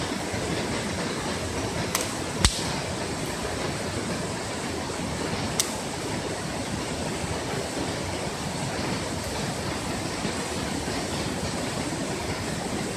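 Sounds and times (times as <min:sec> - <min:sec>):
campfire rushing: 0:00.0 - 0:12.9
sharp fire pop: 0:01.9 - 0:03.0.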